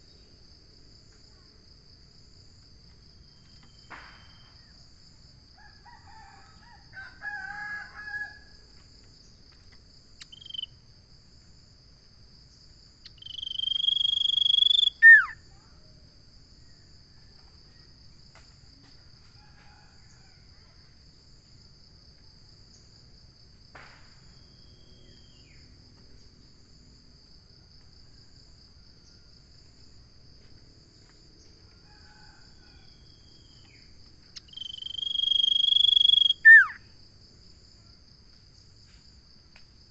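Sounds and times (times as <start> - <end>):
high-pitched insect buzz: 10.2 - 10.7, 13.0 - 15.4, 34.4 - 36.8
bird whistling: 13.3 - 15.4, 34.4 - 36.8.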